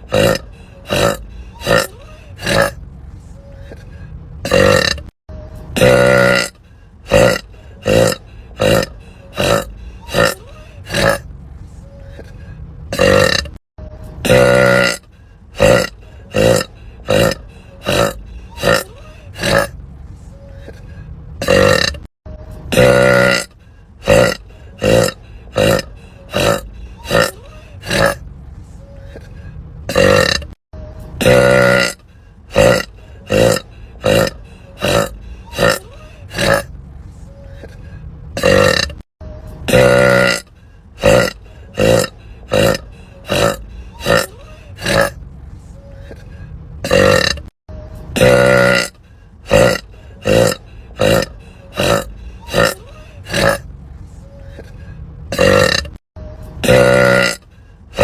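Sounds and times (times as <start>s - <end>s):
woman burping: 0.1s - 2.8s, 4.5s - 5.1s, 5.8s - 6.5s, 7.1s - 11.2s, 12.9s - 13.6s, 14.2s - 15.0s, 15.6s - 19.7s, 21.4s - 22.1s, 22.7s - 28.2s, 29.9s - 30.6s, 31.2s - 32.0s, 32.6s - 36.7s, 38.4s - 39.0s, 41.0s - 45.2s, 46.8s - 47.5s, 49.5s - 53.6s, 55.3s - 56.0s, 56.6s - 57.4s.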